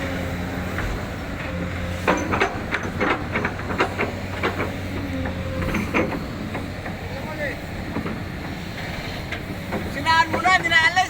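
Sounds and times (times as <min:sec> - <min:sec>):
diesel engine running: 0:00.0 - 0:11.0
sharp knocks and clatters: 0:02.0 - 0:08.6, 0:09.3 - 0:10.8.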